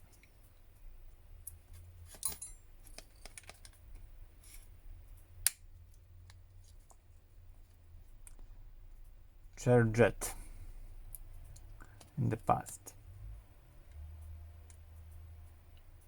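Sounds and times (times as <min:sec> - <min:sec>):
low steady hum: 0:00.0 - 0:16.0
light clicks and taps of tools: 0:11.1 - 0:12.9.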